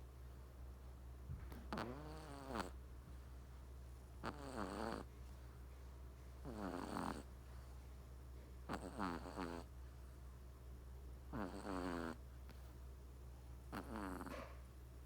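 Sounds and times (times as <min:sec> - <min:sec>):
kitten snoring: 0:01.5 - 0:02.8, 0:04.2 - 0:05.1, 0:06.4 - 0:07.7, 0:08.7 - 0:09.7, 0:11.3 - 0:12.2, 0:13.7 - 0:14.6.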